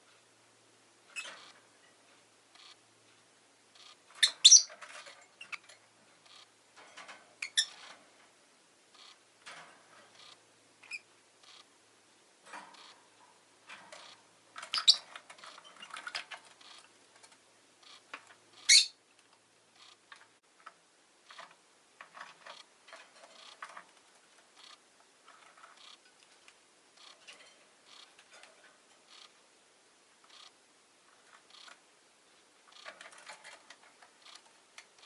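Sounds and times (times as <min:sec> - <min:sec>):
small scratchy clicks: 0:01.1 - 0:08.3, 0:08.9 - 0:11.7, 0:12.4 - 0:29.4, 0:30.2 - 0:31.9, 0:32.6 - 0:35.0
lovebird chirping: 0:03.8 - 0:06.5, 0:07.4 - 0:07.8, 0:10.2 - 0:11.7, 0:14.0 - 0:16.8, 0:18.6 - 0:19.0.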